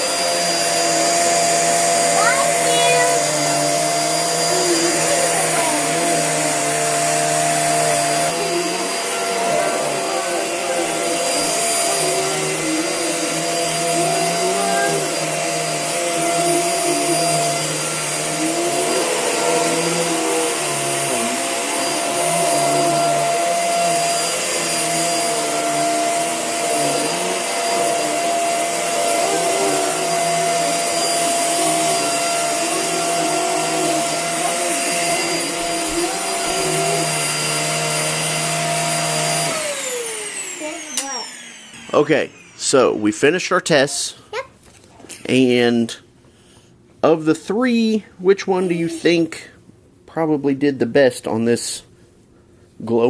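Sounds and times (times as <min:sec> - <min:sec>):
vacuum cleaner running: 0:00.0 - 0:44.4, 0:47.5 - 0:49.5.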